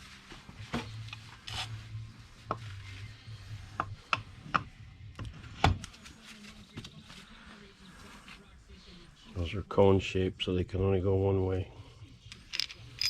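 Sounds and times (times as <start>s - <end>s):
sharp metal clinks and knocks: 12.4s - 13.0s.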